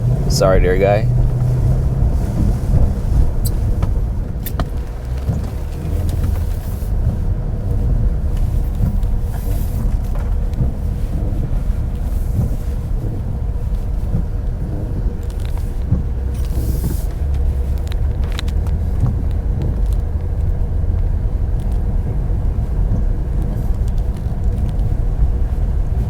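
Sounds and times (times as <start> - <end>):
car engine and tyre rumble: 0.0 - 26.0.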